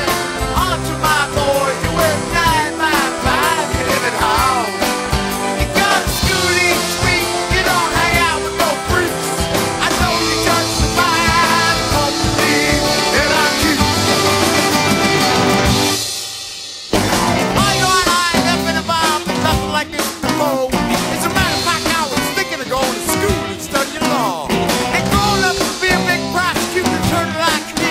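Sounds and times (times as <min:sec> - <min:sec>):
rock band playing: 0:00.0 - 0:27.9.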